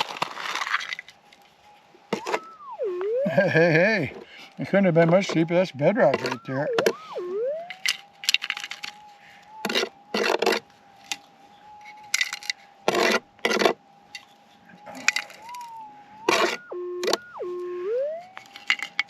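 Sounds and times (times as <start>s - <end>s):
pick digging in rocky ground: 0.0s - 1.5s
metal detector threshold hum: 2.1s - 12.5s, 13.3s - 19.0s.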